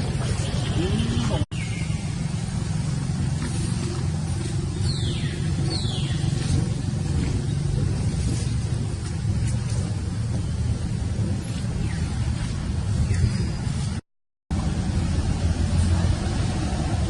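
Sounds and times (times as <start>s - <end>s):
low engine-like rumble: 0.0s - 17.0s.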